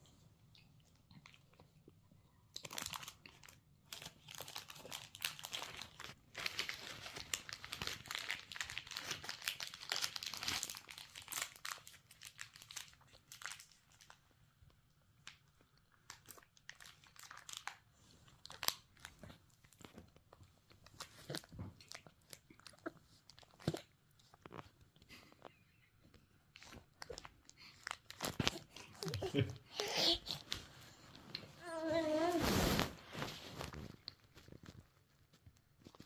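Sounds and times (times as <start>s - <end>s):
wrapper crinkling: 2.6s - 14.2s, 15.2s - 23.8s, 26.5s - 29.4s.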